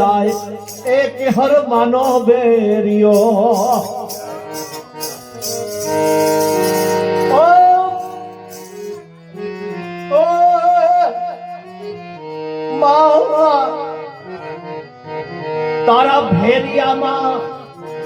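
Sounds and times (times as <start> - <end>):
high jingling percussion: 0.0 - 13.2, 17.4 - 18.0
devotional music with singing: 0.0 - 18.0.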